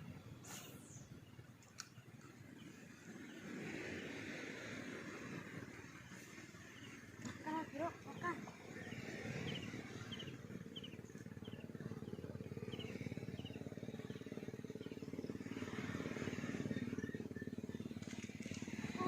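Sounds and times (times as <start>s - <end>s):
small engine running: 2.7s - 19.0s
bird chirping: 7.5s - 15.4s.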